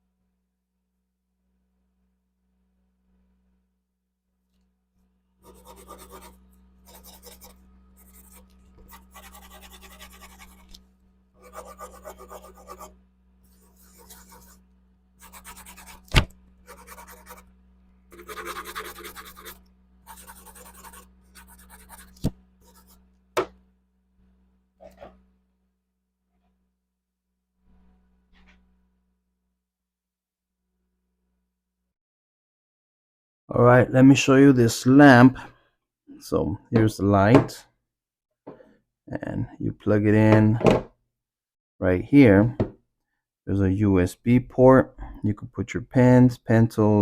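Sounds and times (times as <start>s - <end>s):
scraping and rubbing: 5.4s - 10.8s, 13.5s - 14.6s.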